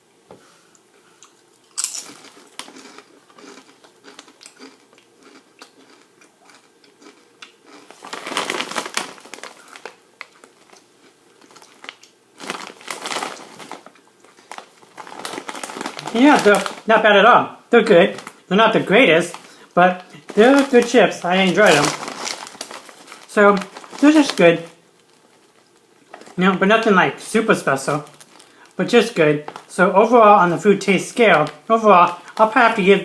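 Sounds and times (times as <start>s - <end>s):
chewing crunches: 1.2s - 16.8s, 21.5s - 24.3s, 28.0s - 28.8s
chip bag crinkling: 1.4s - 33.0s
crunchy bite into potato chip: 1.7s - 9.7s.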